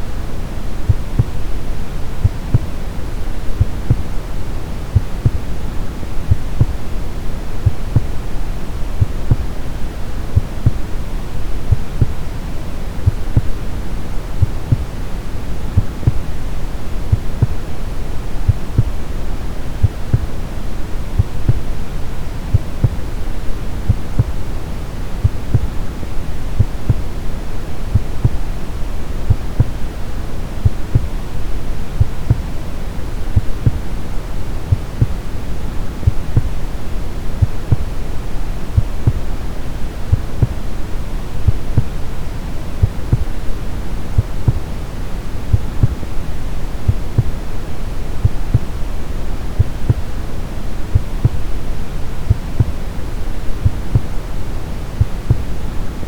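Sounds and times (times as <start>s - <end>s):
brown noise hiss: 0.0s - 56.0s
slow heartbeat: 0.8s - 1.5s, 3.5s - 4.1s, 5.0s - 5.5s, 6.2s - 6.8s, 7.6s - 8.2s, 9.0s - 9.6s, 10.4s - 10.9s, 11.7s - 12.2s, 13.0s - 13.8s, 15.7s - 16.3s, 17.1s - 17.7s, 21.2s - 21.8s, 23.8s - 24.4s, 26.6s - 27.1s, 29.3s - 29.8s, 30.6s - 31.2s, 33.4s - 33.9s, 36.0s - 36.6s, 37.4s - 38.0s, 38.8s - 39.3s, 40.1s - 40.7s, 41.4s - 42.0s, 42.8s - 43.4s, 45.5s - 46.1s, 46.9s - 47.4s, 48.2s - 48.8s, 50.9s - 51.5s, 52.3s - 52.8s, 53.6s - 54.1s, 55.0s - 55.5s.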